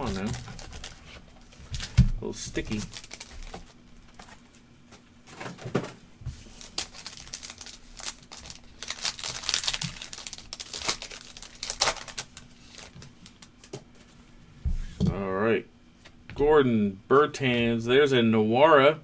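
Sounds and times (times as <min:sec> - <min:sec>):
wrapper torn and crinkled: 0:00.0 - 0:04.3, 0:06.5 - 0:13.6.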